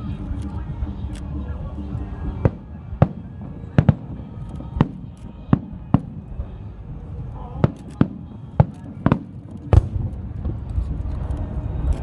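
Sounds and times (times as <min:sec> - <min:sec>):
fireworks bangs: 0:02.4 - 0:06.8, 0:07.6 - 0:11.3.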